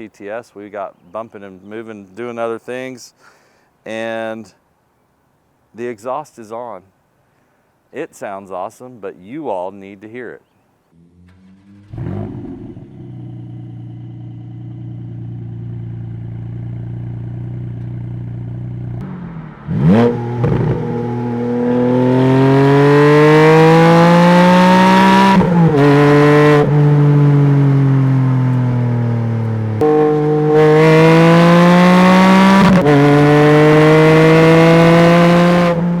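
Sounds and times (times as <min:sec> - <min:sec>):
sports car engine revving: 0:11.0 - 0:36.0.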